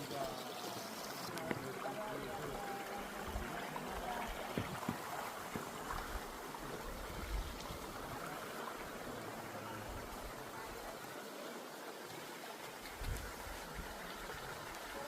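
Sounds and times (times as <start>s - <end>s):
river water flowing: 0.0s - 15.0s.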